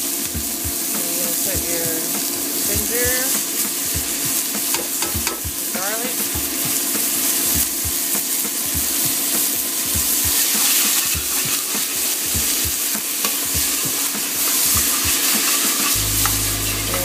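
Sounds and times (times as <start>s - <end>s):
food sizzling in hot oil: 0.0s - 17.0s
spoon stirring in pan: 10.4s - 17.0s.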